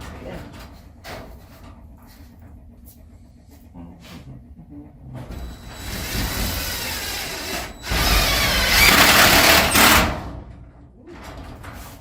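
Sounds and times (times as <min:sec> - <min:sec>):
power drill driving screw into metal: 0:05.8 - 0:10.1.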